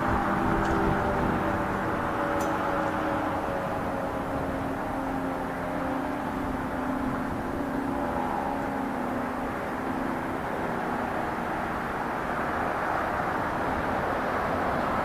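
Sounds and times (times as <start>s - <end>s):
wind on microphone: 0.0s - 5.6s
siren steady low tone: 0.0s - 15.0s.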